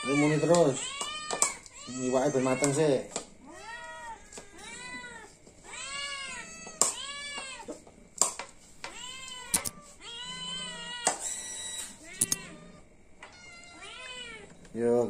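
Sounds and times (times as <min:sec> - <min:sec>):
cat meowing: 0:00.0 - 0:07.8, 0:08.8 - 0:14.6
sharp clicks: 0:09.5 - 0:09.8, 0:12.2 - 0:12.4.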